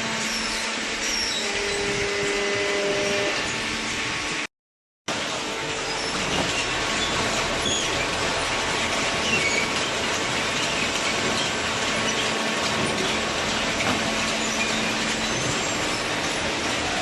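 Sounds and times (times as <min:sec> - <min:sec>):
machinery running: 0:05.1 - 0:17.0.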